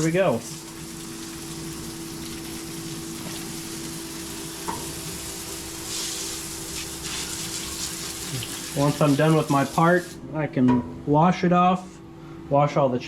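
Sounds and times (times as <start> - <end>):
pump humming: 0.0 - 10.2
coolant spray hissing: 5.5 - 10.2.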